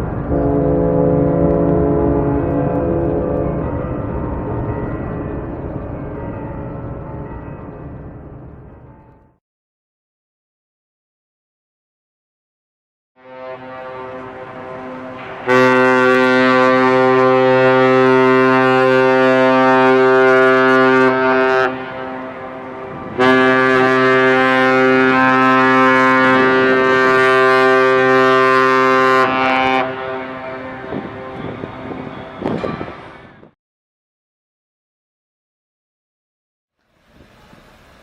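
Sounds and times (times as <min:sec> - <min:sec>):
ship horn deep blasts: 0:00.0 - 0:09.3, 0:13.2 - 0:33.6
quieter horn tone: 0:00.0 - 0:09.4, 0:13.2 - 0:33.5.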